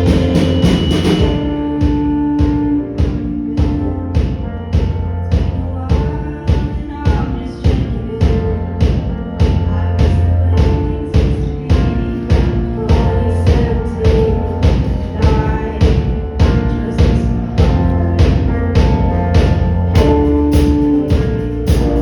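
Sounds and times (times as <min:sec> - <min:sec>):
band music: 0:00.0 - 0:05.4, 0:11.8 - 0:22.0
held bass notes: 0:00.0 - 0:22.0
steady drum beat: 0:00.0 - 0:22.0.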